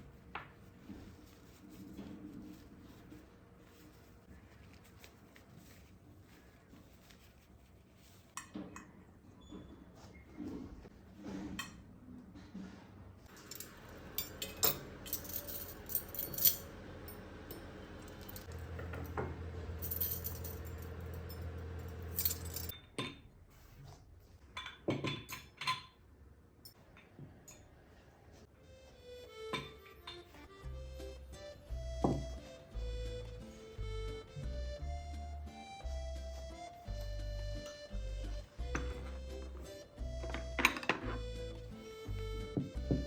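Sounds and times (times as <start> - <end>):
dishes and cutlery clinking: 24.5 - 26.0, 40.2 - 41.2.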